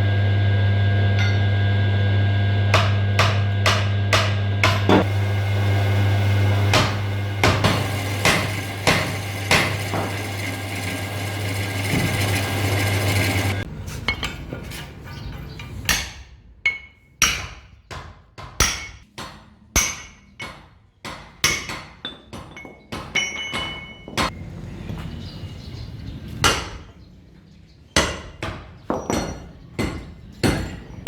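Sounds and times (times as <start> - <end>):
low machine hum: 0.0 - 13.7.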